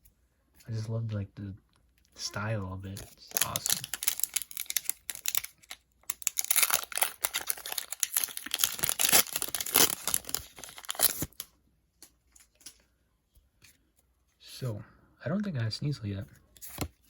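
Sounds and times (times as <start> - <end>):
foil wrapper tearing and crinkling: 3.2 - 11.5.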